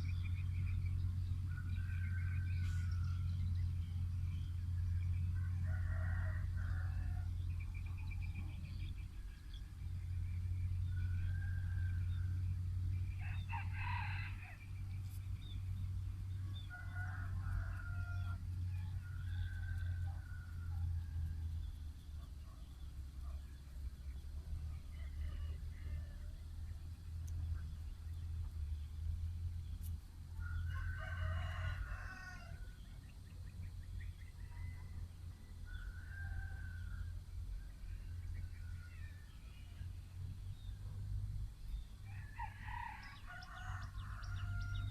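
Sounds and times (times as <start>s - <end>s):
steady low hum: 0.0s - 44.9s
steady low rumble: 0.0s - 44.9s
rooster crowing: 1.5s - 3.7s, 5.4s - 7.4s, 10.8s - 12.5s, 13.1s - 14.7s, 16.4s - 21.7s, 24.7s - 26.4s, 30.4s - 32.9s, 34.2s - 37.2s, 37.9s - 39.5s, 42.0s - 44.9s.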